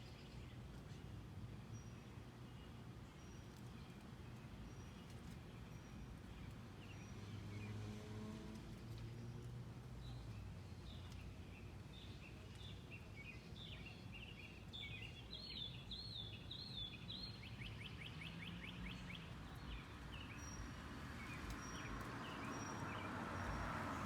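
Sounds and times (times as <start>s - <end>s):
outdoor background noise: 0.0s - 24.0s.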